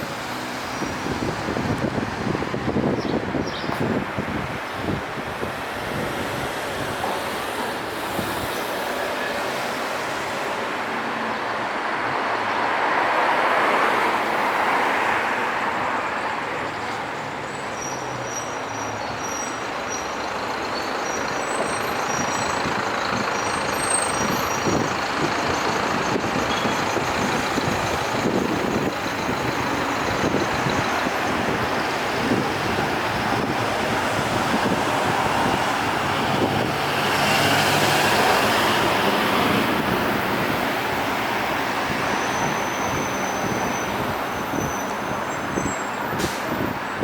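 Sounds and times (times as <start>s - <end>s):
street traffic noise: 0.0s - 47.0s
vehicle passing close: 27.2s - 44.6s.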